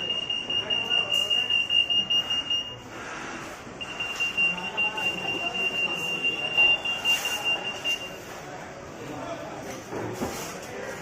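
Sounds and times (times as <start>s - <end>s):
high-pitched alarm tone: 3.8s - 8.2s.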